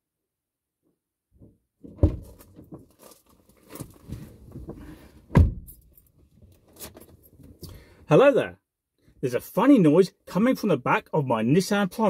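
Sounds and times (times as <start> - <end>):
knocks and rustling handling: 1.4 - 7.7
heavy thumps: 4.0 - 5.8.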